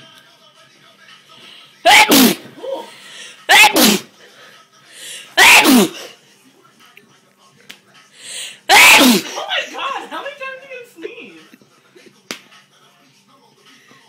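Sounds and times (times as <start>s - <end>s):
girl sneezing: 1.9s - 2.9s, 3.5s - 4.1s, 5.4s - 6.2s, 8.7s - 9.7s.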